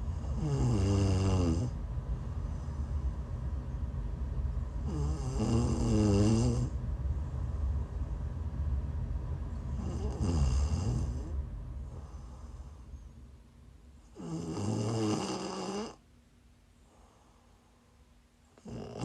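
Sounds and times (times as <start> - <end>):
woman snoring: 0.1 - 1.8, 4.8 - 6.8, 9.8 - 11.4, 14.1 - 16.0, 18.6 - 19.0.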